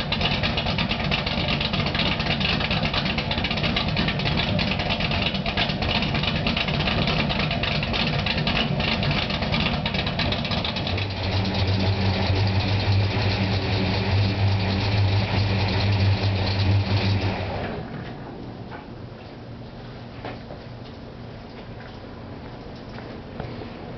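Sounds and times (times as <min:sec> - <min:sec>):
car engine idling: 0:00.0 - 0:18.4.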